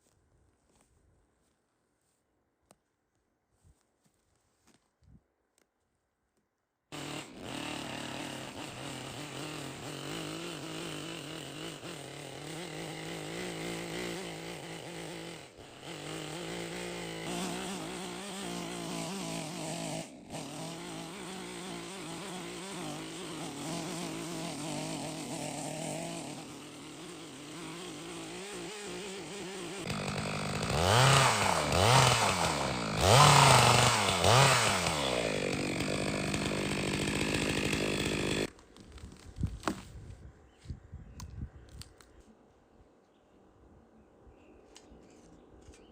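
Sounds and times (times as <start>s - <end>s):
chainsaw engine revving: 6.9s - 38.5s.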